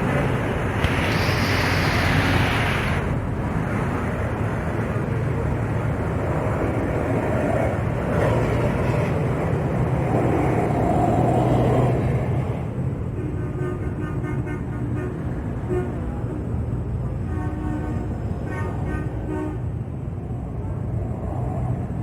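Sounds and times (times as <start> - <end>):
bus engines running: 0.0 - 22.0
road noise: 0.0 - 22.0
hiss: 0.6 - 3.2.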